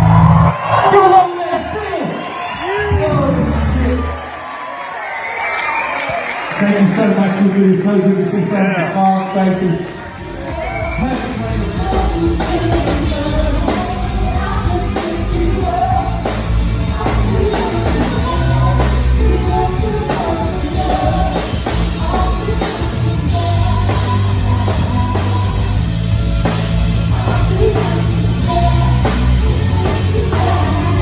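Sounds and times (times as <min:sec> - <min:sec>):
bass line: 0:00.0 - 0:01.8, 0:09.5 - 0:31.0
horns keys or voices melody: 0:06.7 - 0:31.0
drum kit beat: 0:09.6 - 0:31.0.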